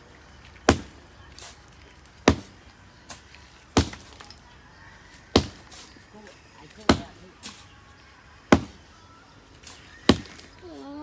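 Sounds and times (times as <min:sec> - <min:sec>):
hand-tool strikes: 0:00.7 - 0:01.0, 0:02.2 - 0:03.2, 0:03.8 - 0:04.4, 0:05.3 - 0:05.9, 0:06.8 - 0:07.6, 0:08.5 - 0:08.9, 0:10.1 - 0:10.5.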